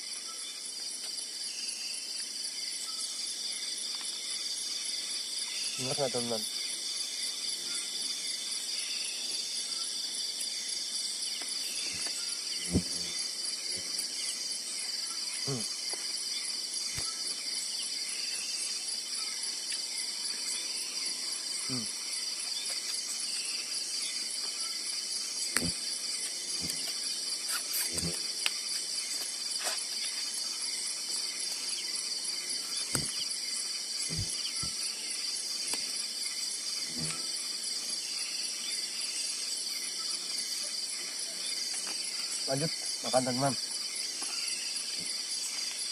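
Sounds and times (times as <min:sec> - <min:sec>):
insects chorus: 0:00.0 - 0:45.9.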